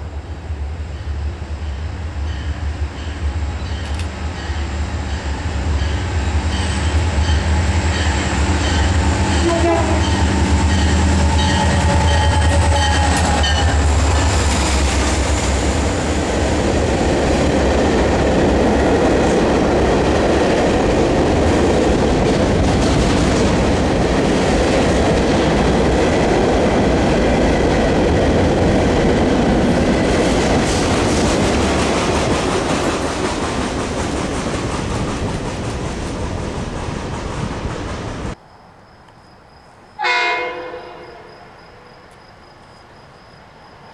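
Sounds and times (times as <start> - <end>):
train wheels clickety-clack: 1.0 - 38.4.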